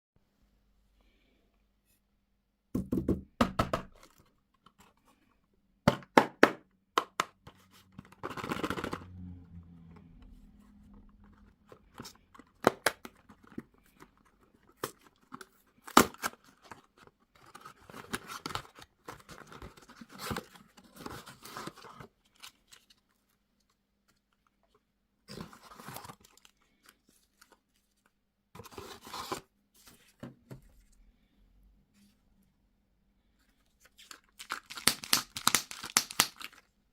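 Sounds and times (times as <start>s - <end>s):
packaging torn and crinkled: 34.0s - 36.7s
sharp clicks and snaps: 34.7s - 36.6s.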